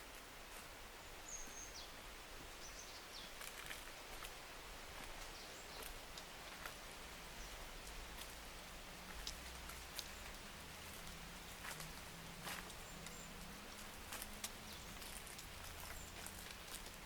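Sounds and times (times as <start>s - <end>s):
soft steady hiss: 0.0s - 17.0s
light ticks: 9.1s - 10.4s.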